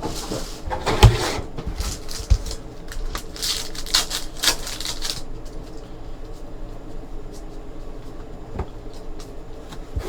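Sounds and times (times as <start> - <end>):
faint steady hum: 0.0 - 10.0
wrappers crinkling and tearing: 1.8 - 5.8.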